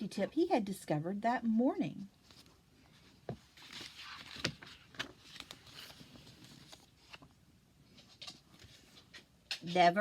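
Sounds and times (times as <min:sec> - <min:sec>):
paper book rustling: 0:02.2 - 0:09.7.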